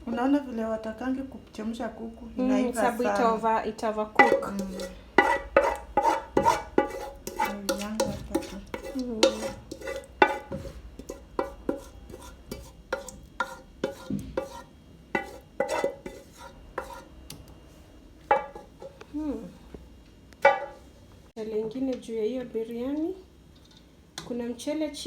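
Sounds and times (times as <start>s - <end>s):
metal spoon scraping saucepan: 4.1s - 17.1s.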